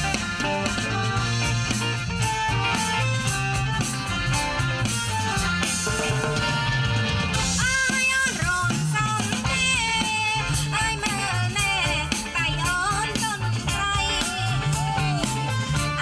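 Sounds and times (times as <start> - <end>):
drum kit steady beat: 0.0 - 16.0
guitar: 0.0 - 16.0
walking bass line: 0.0 - 16.0
person singing: 7.6 - 16.0.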